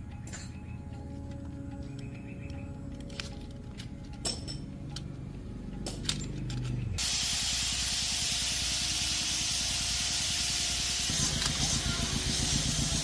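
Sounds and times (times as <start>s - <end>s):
metal parts clicking: 1.2s - 5.0s, 5.8s - 7.0s
compressed air spraying hiss: 7.0s - 13.0s.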